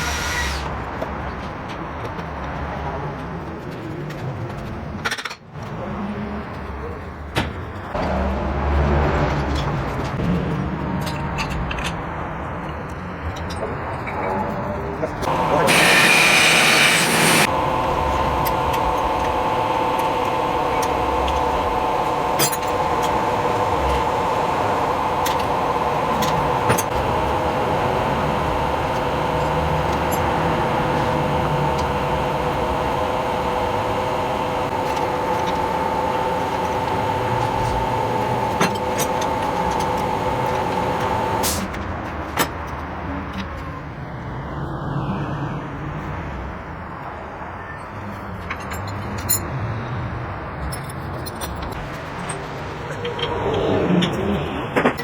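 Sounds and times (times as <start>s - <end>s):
machine high whine and hiss: 0.0s - 0.7s, 15.2s - 41.7s.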